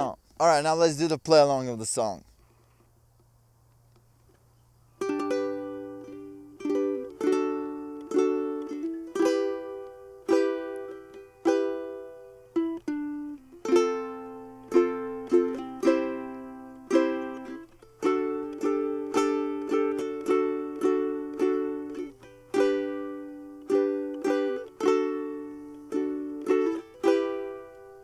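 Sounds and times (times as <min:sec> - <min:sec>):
ukulele chords strummed: 0:05.0 - 0:28.0.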